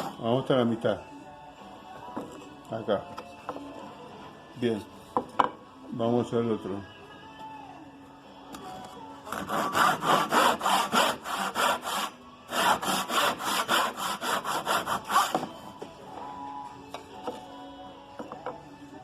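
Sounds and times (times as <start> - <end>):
hand saw cutting wood: 9.3 - 15.6.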